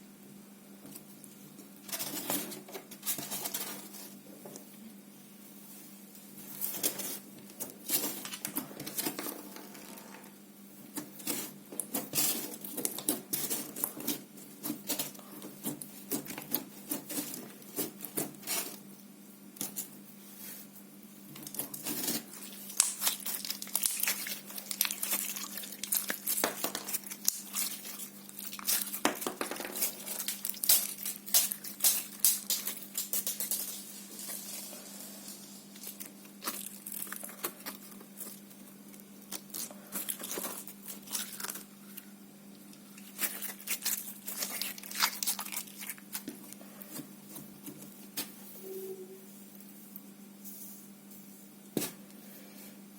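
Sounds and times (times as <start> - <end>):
faint steady hum: 0.0 - 52.9
slime squished by hand: 21.4 - 29.0.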